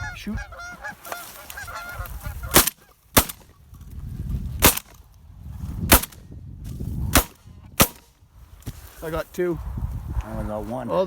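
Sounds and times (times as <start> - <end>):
geese honking: 0.0 - 3.0
shotgun blasts: 2.5 - 3.4, 4.6 - 4.9, 5.9 - 6.2, 7.1 - 8.1.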